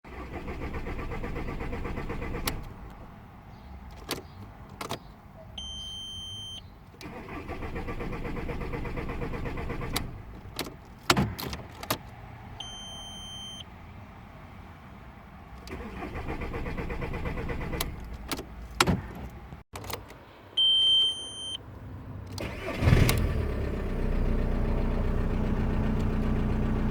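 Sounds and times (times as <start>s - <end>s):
car starter cranking: 0.1s - 2.9s, 7.0s - 12.1s, 15.6s - 20.1s, 22.3s - 23.6s
short electronic beep: 20.6s - 21.6s.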